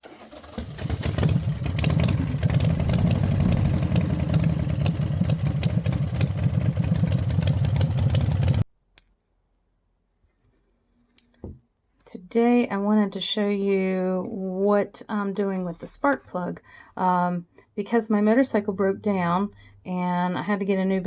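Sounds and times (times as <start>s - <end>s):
motorcycle engine idling: 0.4s - 8.6s.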